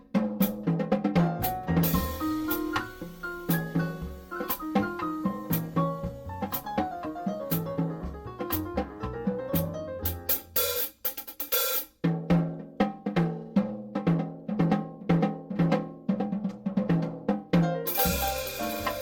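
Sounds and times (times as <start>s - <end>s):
drum kit beat: 0.0s - 19.0s
bass and keyboard notes: 1.4s - 10.6s, 17.9s - 19.0s.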